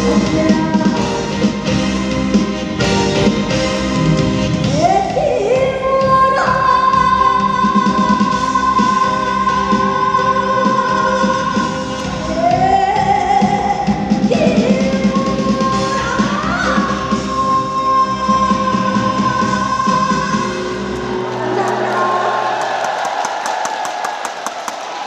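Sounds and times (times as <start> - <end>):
band accompaniment with steady beat: 0.0 - 5.2.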